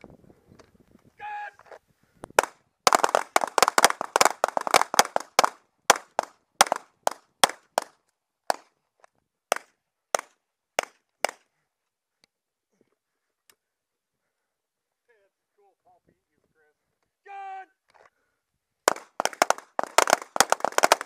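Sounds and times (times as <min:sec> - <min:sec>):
rapid handgun fire: 0:18.9 - 0:21.0.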